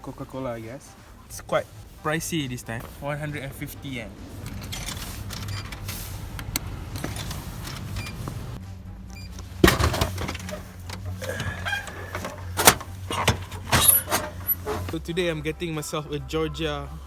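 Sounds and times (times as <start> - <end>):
vending machine clicks: 9.6 - 15.0.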